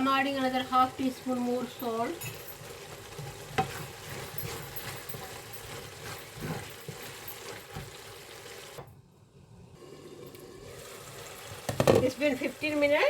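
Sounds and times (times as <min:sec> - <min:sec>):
food sizzling: 0:00.0 - 0:13.0
spatula scraping a pan: 0:02.5 - 0:08.6.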